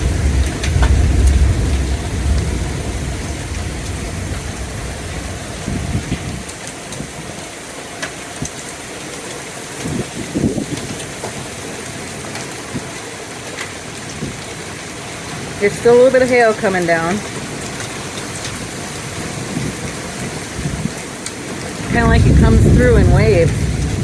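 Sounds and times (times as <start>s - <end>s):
deep rumble: 0.0s - 6.5s, 21.9s - 24.0s
hail ticking: 0.0s - 24.0s
heavy rain pouring: 0.0s - 24.0s.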